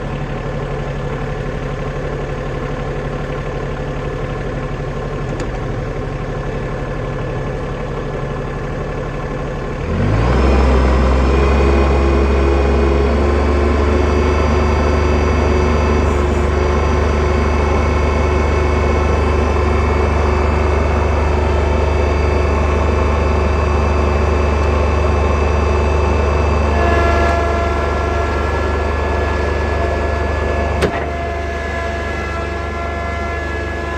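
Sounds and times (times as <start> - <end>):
tractor engine revving: 9.6 - 33.9.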